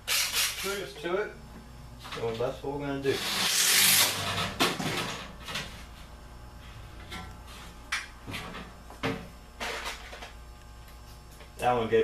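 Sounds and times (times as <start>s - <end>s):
drill driving screw into metal: 0.1s - 0.8s, 3.2s - 4.5s.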